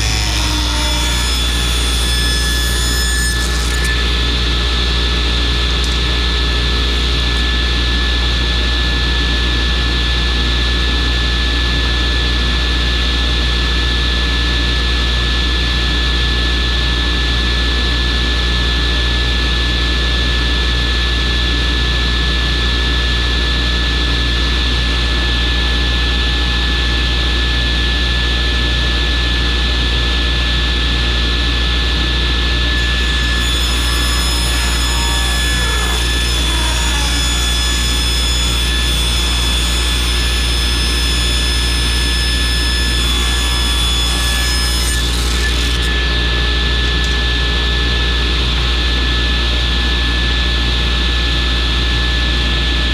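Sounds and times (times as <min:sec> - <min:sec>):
dust collector running: 0:00.0 - 0:09.0, 0:32.3 - 0:47.4.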